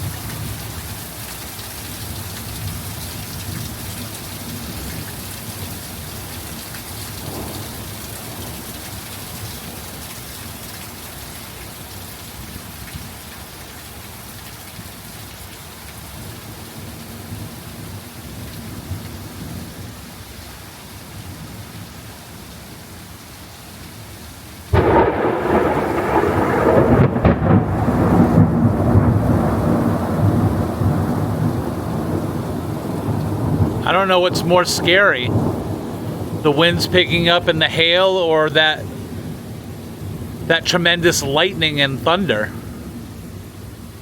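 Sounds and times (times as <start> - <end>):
steady rain falling: 0.0 - 44.0
thunderclap rumbling: 24.7 - 42.8.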